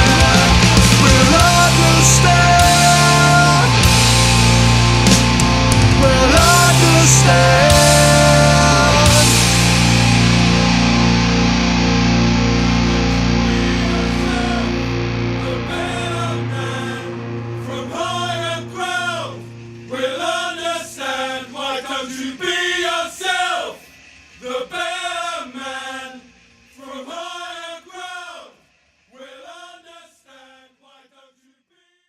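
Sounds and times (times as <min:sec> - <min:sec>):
person singing: 0:00.0 - 0:04.0, 0:05.8 - 0:10.6, 0:12.6 - 0:23.8.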